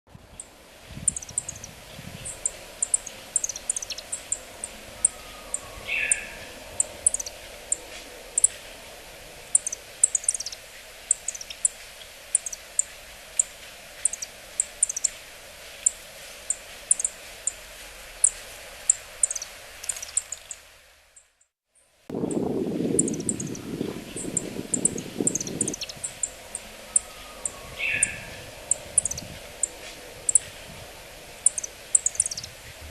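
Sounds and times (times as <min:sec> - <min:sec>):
background hiss: 0:00.1 - 0:32.9
low noise: 0:00.1 - 0:32.9
bird high call notes: 0:02.2 - 0:08.6, 0:23.0 - 0:30.5.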